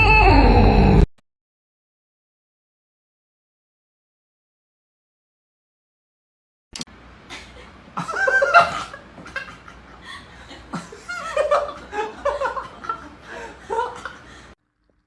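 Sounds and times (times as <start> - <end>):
person laughing: 7.3 - 14.5.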